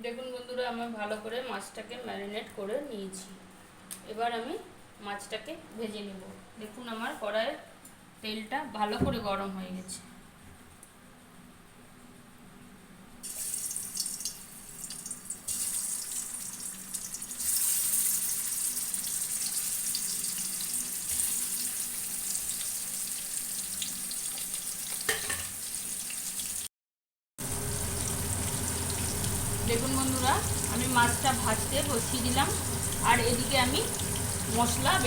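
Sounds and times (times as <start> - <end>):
fish sizzling in hot oil: 13.2 - 26.7, 27.4 - 35.0.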